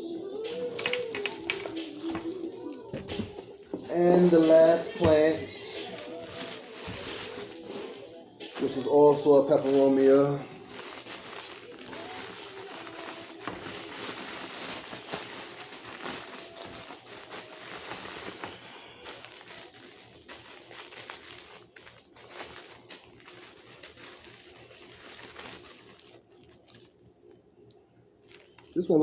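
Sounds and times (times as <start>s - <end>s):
plastic bag crinkling and rustling: 0.4s - 27.4s, 28.2s - 29.0s.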